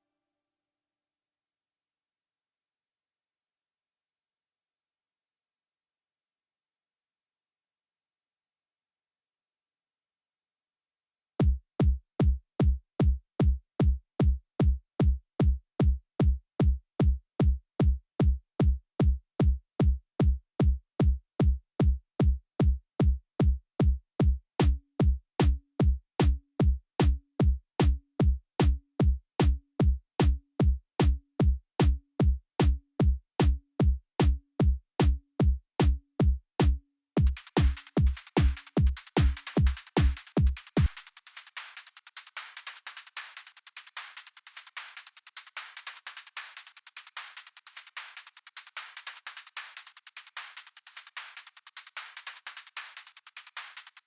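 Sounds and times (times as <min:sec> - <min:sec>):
electronic kick drum: 0:11.4 - 0:43.2.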